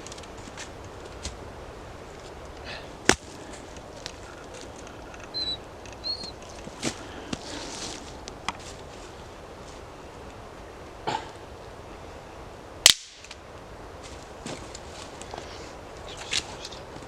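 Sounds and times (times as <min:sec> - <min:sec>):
dead sticks snapping: 0:02.4 - 0:07.5, 0:12.8 - 0:13.4.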